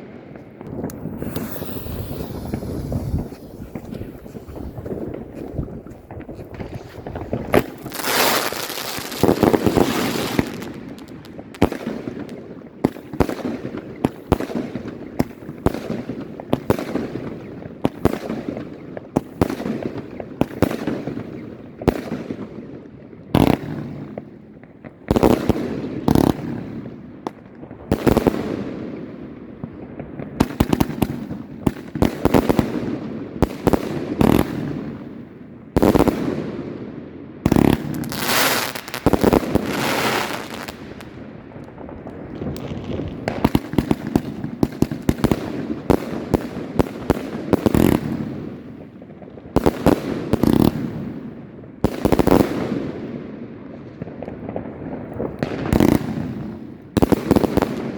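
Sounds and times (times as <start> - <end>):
firework bangs: 0.0 - 22.6, 23.3 - 53.3, 54.0 - 57.9.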